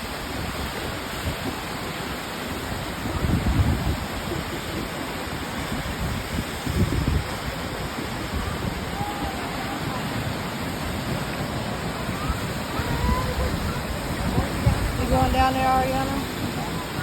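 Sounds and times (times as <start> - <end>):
waterfall rushing: 0.0 - 17.0
wind rumble on microphone: 0.0 - 17.0.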